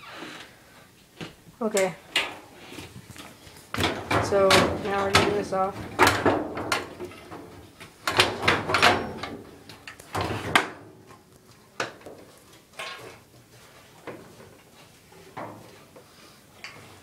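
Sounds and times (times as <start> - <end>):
sheet metal knocking and scraping: 3.7 - 9.5.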